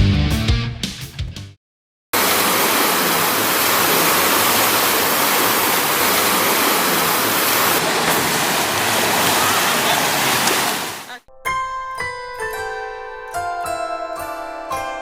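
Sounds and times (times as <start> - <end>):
rushing water: 2.2 - 11.2.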